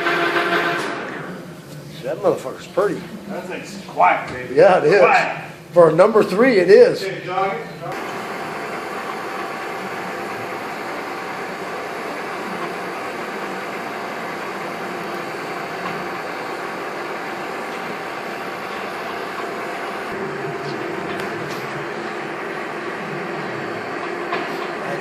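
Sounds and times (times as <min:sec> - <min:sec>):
faint steady tones: 0:07.8 - 0:21.1
grinder machine hum: 0:07.8 - 0:25.0.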